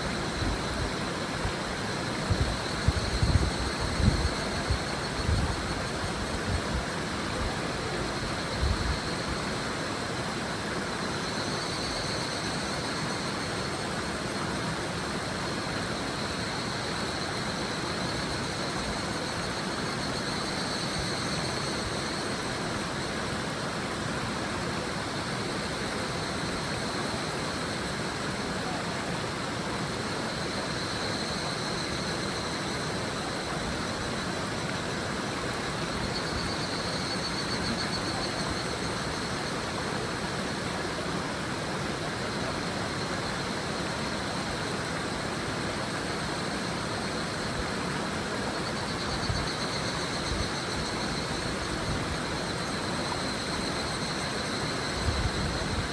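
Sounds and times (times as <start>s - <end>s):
cicadas trilling: 0.0s - 55.9s
river babbling: 0.0s - 55.9s.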